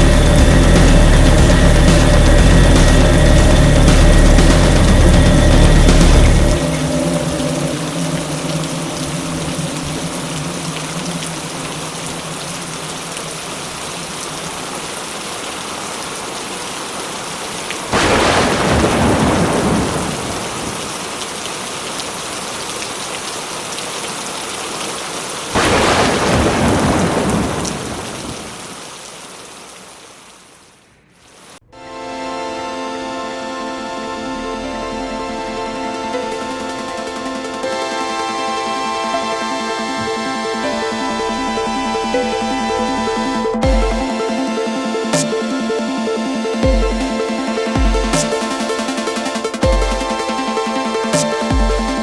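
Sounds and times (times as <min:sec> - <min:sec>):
thunderclaps: 0:00.0 - 0:13.5, 0:17.9 - 0:21.2, 0:25.6 - 0:28.9
heavy rain: 0:00.0 - 0:31.6, 0:32.4 - 0:52.0.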